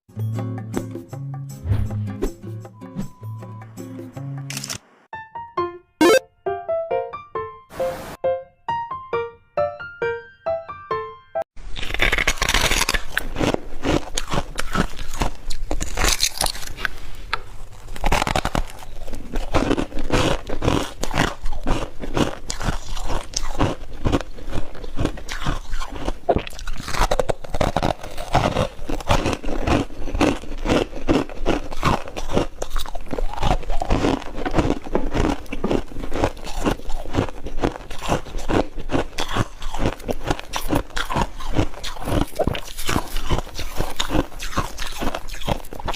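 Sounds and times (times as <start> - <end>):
chewing crunchy frost: 11.7 - 45.9.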